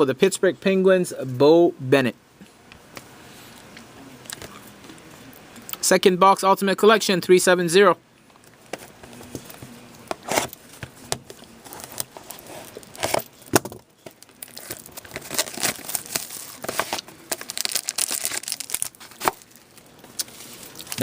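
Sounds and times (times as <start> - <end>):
plastic wrapping tearing and crinkling: 11.6 - 21.0.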